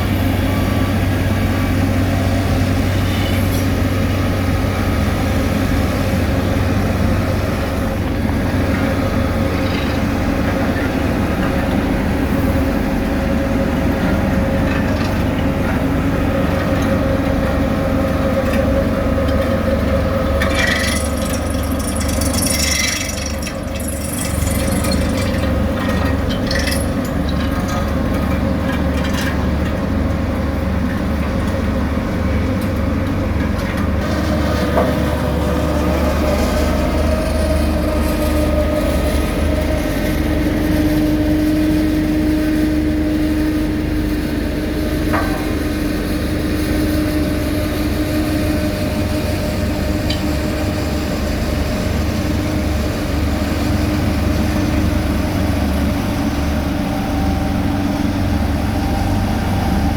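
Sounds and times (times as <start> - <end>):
diesel machinery engine hum: 0.0 - 59.9
metallic rattling and clatter: 20.4 - 29.4.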